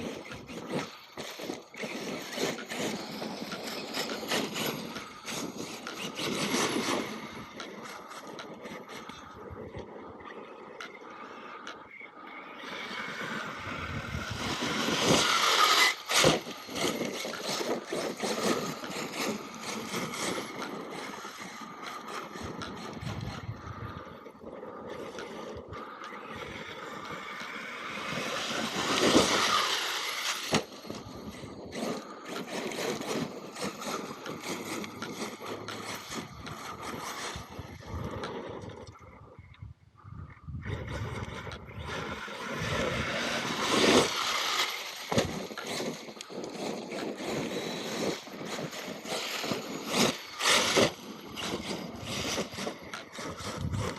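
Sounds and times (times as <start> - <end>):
electric rc truck driving: 0.0 - 53.9
tyres scrabbling on gravel: 12.8 - 23.4, 26.8 - 38.0, 41.8 - 53.9.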